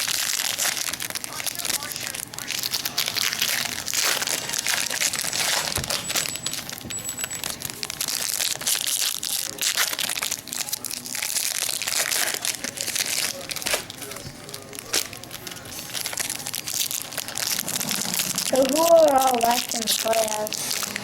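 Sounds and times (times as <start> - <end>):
wrappers crinkling: 0.0 - 21.0.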